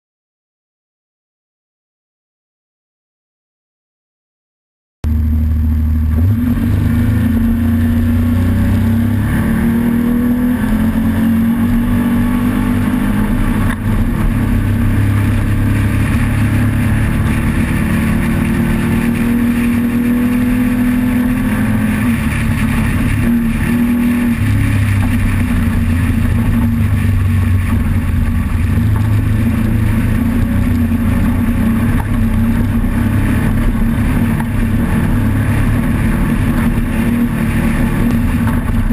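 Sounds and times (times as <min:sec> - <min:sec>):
engine revving hard: 0:05.1 - 0:27.8.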